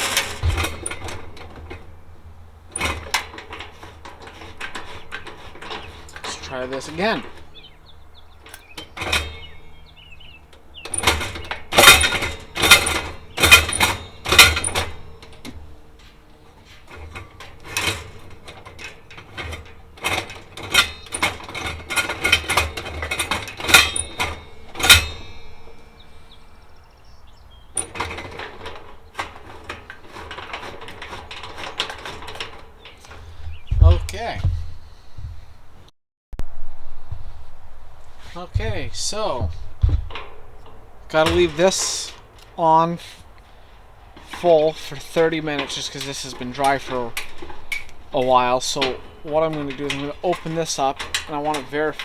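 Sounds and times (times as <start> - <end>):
heater controls clicking and knocking: 0.0 - 52.0
soft rustling: 28.8 - 52.0.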